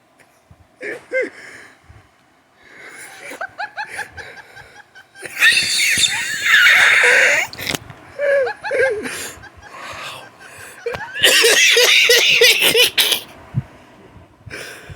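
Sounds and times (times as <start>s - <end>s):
person wheezing laugh: 3.1s - 13.3s
cough-like rasp: 11.2s - 13.3s.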